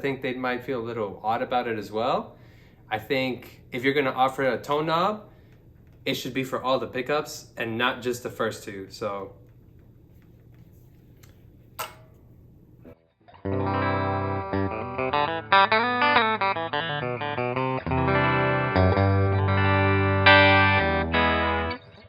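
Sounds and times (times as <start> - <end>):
electric guitar lead with bends: 13.0 - 22.0
ringing guitar chords: 13.0 - 22.0.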